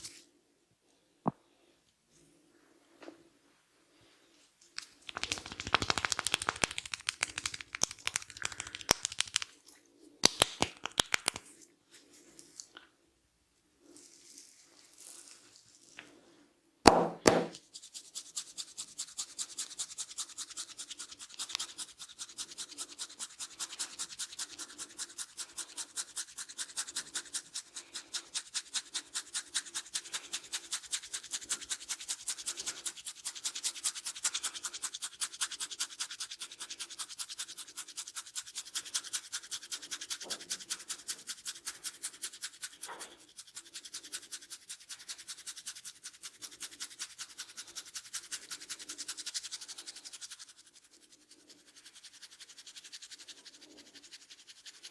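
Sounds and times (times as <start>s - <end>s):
fingers scratching through hair: 4.8s - 9.5s, 10.2s - 11.5s, 14.0s - 15.9s, 17.4s - 54.9s
sharp click: 10.2s - 11.4s.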